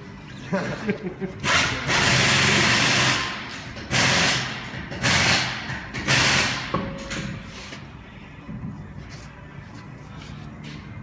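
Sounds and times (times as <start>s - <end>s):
pneumatic air tool bursts: 1.5s - 6.7s.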